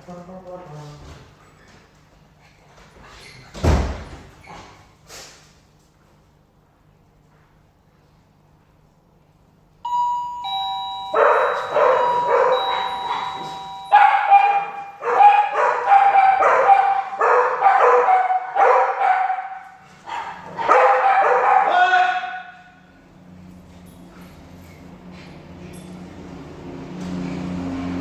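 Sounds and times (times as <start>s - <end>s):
doorbell ding-dong chime: 9.8s - 14.5s
dogs barking: 11.1s - 22.6s.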